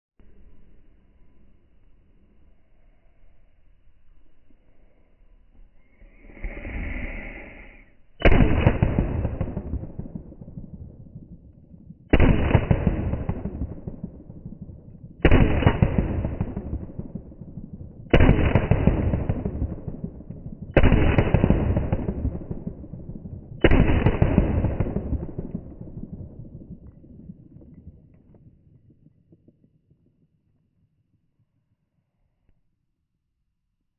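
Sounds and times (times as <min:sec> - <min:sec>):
slowed-down gunshots: 0:08.2 - 0:30.0.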